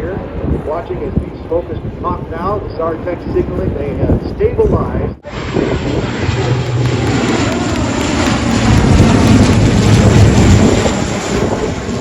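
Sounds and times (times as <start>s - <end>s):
helicopter flying overhead: 5.2s - 12.0s.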